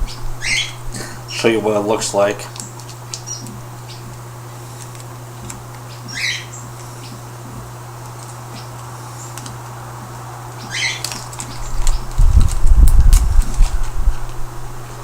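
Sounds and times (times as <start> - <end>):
steady low hum: 0.0 - 15.0
paper wrapper crinkling: 4.6 - 5.7, 10.7 - 14.5.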